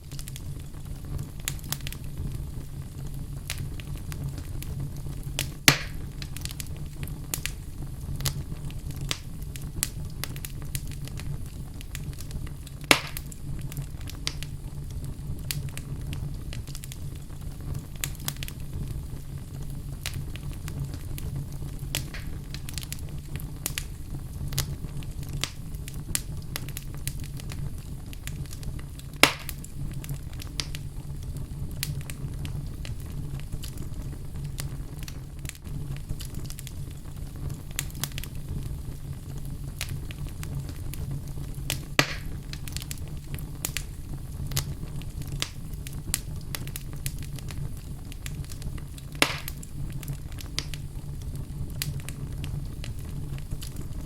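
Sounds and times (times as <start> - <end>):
fire burning: 0.0 - 54.0
fire crackling: 0.0 - 54.0
wood popping: 5.4 - 6.6, 12.8 - 13.4, 21.9 - 22.9, 29.2 - 29.7, 41.7 - 42.9, 49.1 - 49.7.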